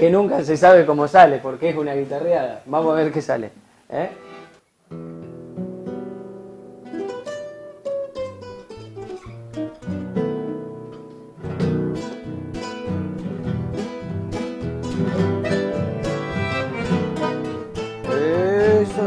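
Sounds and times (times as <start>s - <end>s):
acoustic guitars playing: 4.0s - 19.0s.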